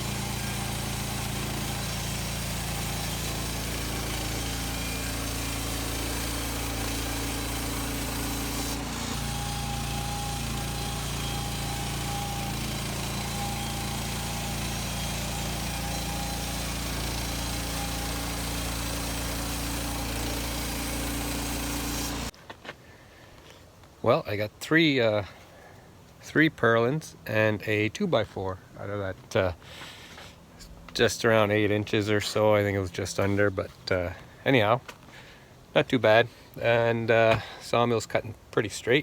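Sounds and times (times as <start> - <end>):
bandsaw mill engine sawing log: 0.0 - 22.3, 30.6 - 34.7.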